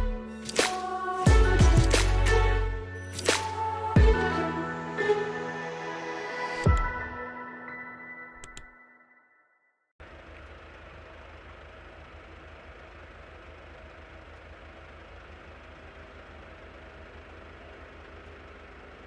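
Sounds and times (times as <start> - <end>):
fire engine idling: 10.0 - 19.0.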